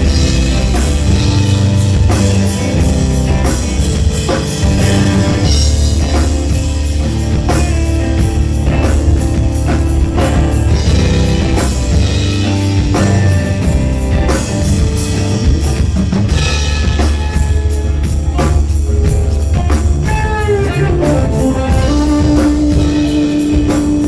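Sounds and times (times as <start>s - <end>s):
bass guitar: 0.0s - 24.0s
drum kit beat: 0.0s - 24.0s
electric guitar: 0.0s - 24.0s.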